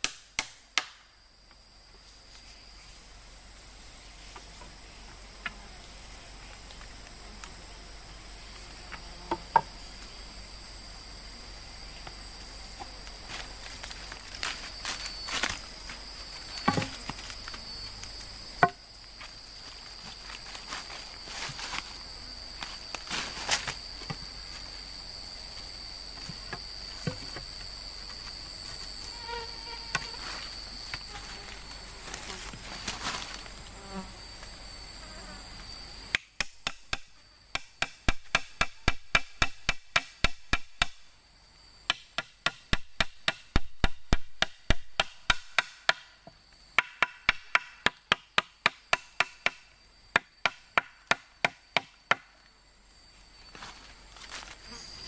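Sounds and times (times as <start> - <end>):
insects droning: 0.0 - 55.0
sharp blows on wood: 36.1 - 41.0, 41.9 - 46.1, 46.8 - 52.3.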